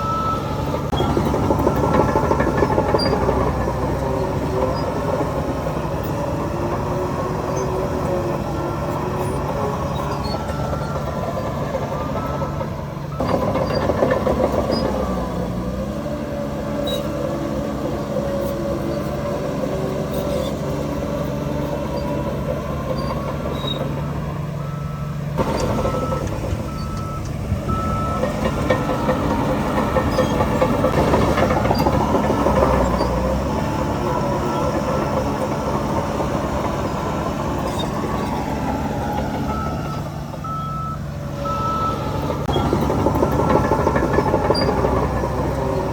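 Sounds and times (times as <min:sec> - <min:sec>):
reversing alarm beeping: 0:00.0 - 0:03.9, 0:08.5 - 0:15.5, 0:21.8 - 0:30.9, 0:38.2 - 0:45.7
heavy diesel machinery running: 0:00.0 - 0:45.9.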